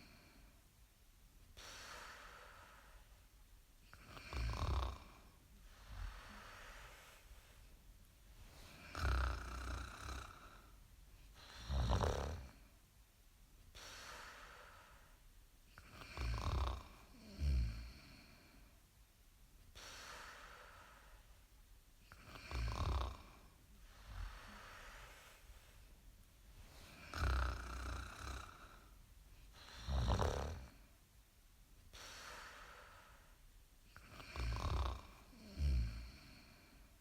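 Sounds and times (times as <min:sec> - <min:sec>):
quiet breathing: 0:00.0 - 0:37.0
person snoring: 0:03.9 - 0:07.2, 0:08.7 - 0:10.7, 0:11.4 - 0:12.6, 0:15.8 - 0:18.5, 0:22.1 - 0:25.5, 0:26.9 - 0:28.9, 0:29.5 - 0:30.8, 0:34.0 - 0:36.8.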